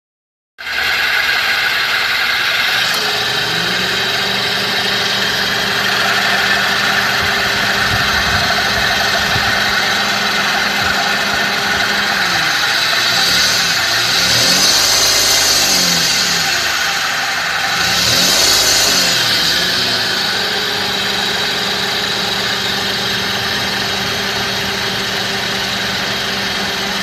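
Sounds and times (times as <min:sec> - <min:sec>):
car engine idling: 0:00.6 - 0:27.0
steady low hum: 0:03.1 - 0:24.7.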